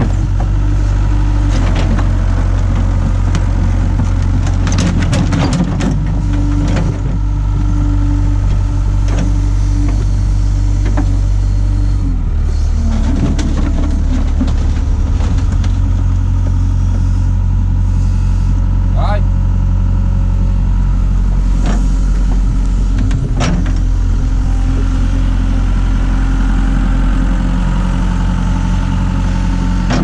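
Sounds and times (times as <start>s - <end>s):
excavator diesel engine running: 0.0s - 30.0s
sharp knocks and clatters: 2.7s - 7.2s
steady high tone: 23.8s - 27.8s.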